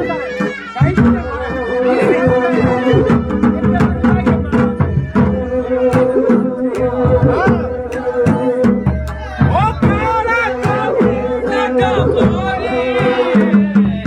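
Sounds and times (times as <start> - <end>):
drums beating: 0.0 - 14.0.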